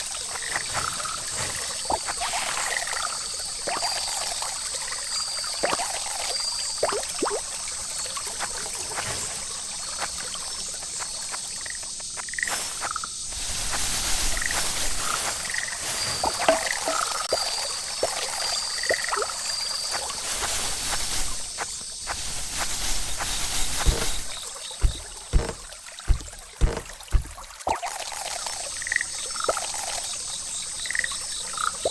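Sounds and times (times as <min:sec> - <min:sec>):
frogs croaking: 0:00.0 - 0:13.7, 0:14.3 - 0:31.9
insect trill: 0:00.0 - 0:31.9
faint trickle of water: 0:24.4 - 0:31.9.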